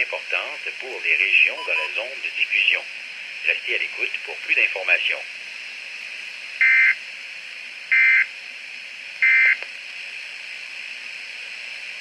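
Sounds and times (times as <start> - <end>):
radio hiss: 0.0 - 5.6
digital data tone bursts: 1.6 - 2.1.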